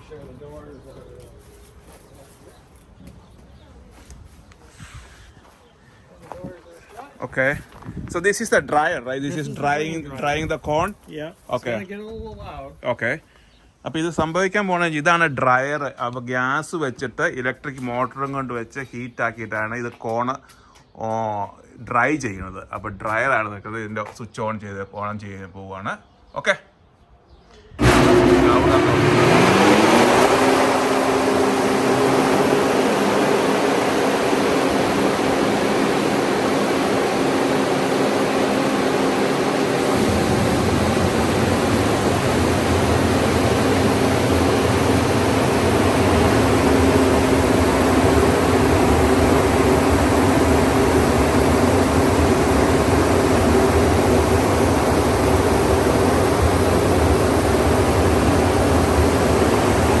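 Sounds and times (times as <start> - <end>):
deep low rumble: 27.8 - 33.4, 34.2 - 60.0
grain dryer fan whine: 27.8 - 60.0.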